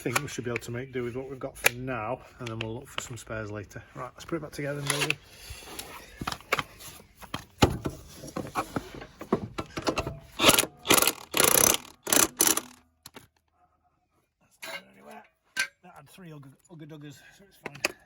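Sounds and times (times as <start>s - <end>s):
metal tools clanking and knocking: 9.1s - 13.2s, 14.6s - 15.9s.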